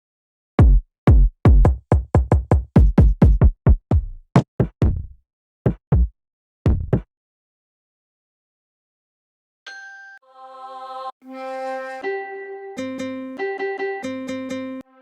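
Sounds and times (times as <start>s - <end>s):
drum machine bass drum hits: 0.6s - 5.1s, 5.7s - 6.1s, 6.7s - 7.1s.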